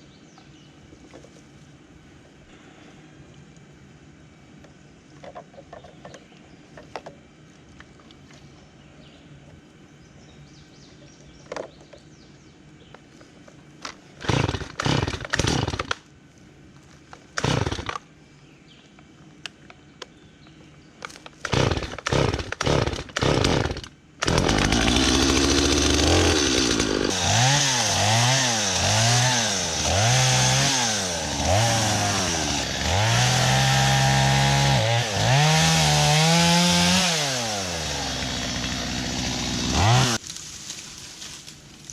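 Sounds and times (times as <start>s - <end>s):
chainsaw revving: 14.2s - 15.9s, 17.4s - 17.9s, 21.4s - 40.2s
chainsaw pull-start tugs: 14.2s - 16.0s, 17.4s - 18.0s, 21.4s - 40.2s.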